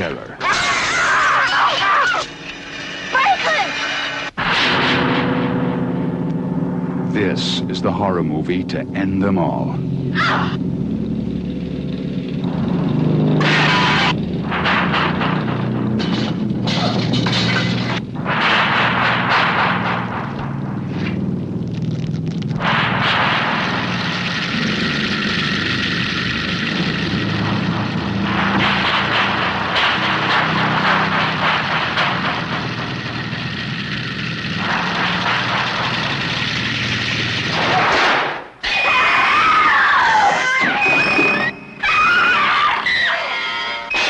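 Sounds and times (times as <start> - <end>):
chainsaw engine revving: 23.5 - 31.2.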